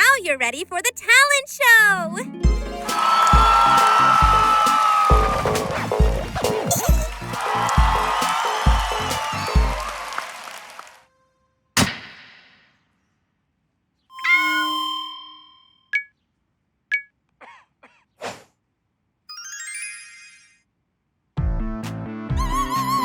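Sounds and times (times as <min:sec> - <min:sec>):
music: 0:00.0 - 0:10.4, 0:21.4 - 0:23.0
ringing chime: 0:14.1 - 0:16.1, 0:19.3 - 0:20.6
rising sparkly tones: 0:19.3 - 0:20.6.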